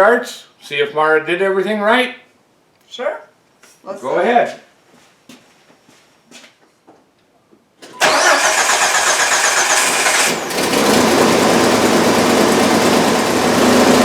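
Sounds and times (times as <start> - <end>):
engine cranking and idling: 8.0 - 14.0.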